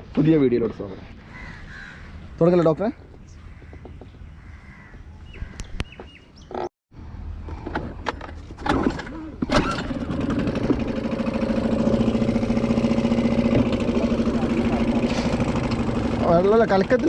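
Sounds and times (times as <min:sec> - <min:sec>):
outboard motor running: 0:09.4 - 0:17.0.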